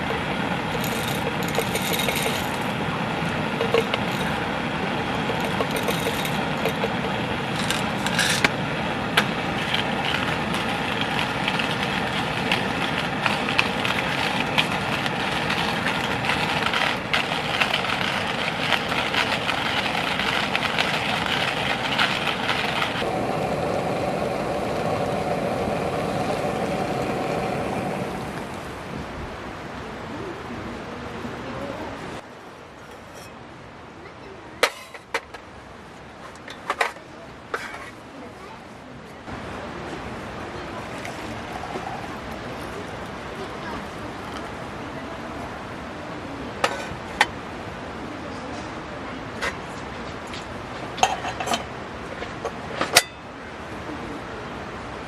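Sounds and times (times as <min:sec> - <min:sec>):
heavy rain falling: 0:00.0 - 0:32.3
campfire crackling and popping: 0:00.1 - 0:28.9.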